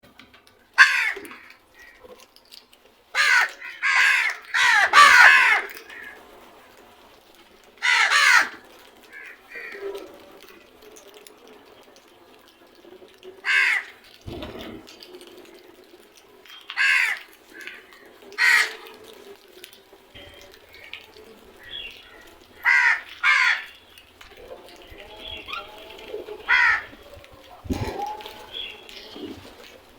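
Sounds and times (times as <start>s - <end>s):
crows cawing: 0.7s - 2.2s, 3.1s - 6.3s, 7.8s - 10.0s, 13.4s - 14.8s, 16.6s - 19.2s, 20.2s - 29.9s.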